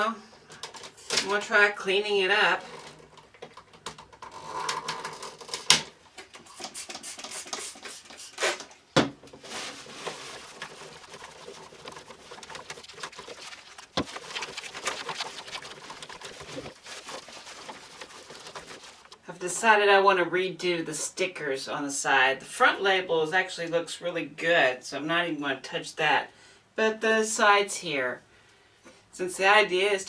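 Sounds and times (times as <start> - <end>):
brush scrubbing plastic: 6.4 - 8.7, 9.4 - 19.2.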